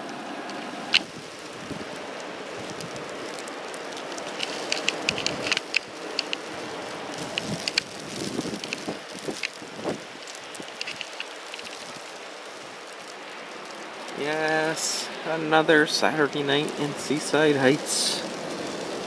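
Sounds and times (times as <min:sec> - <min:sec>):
blizzard wind: 0:00.0 - 0:19.0
blowing snow hissing: 0:01.0 - 0:19.0
sharp ticks: 0:04.4 - 0:06.5.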